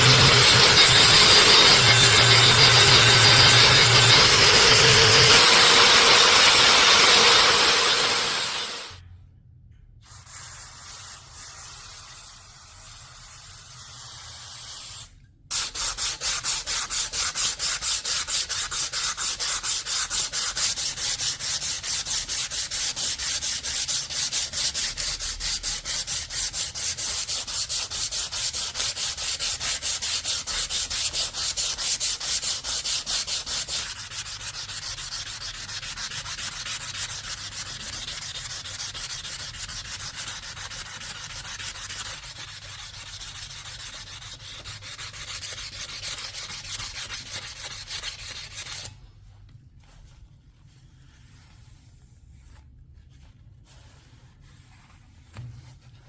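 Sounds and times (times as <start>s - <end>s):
hand rubbing steel blade: 0.0s - 8.6s.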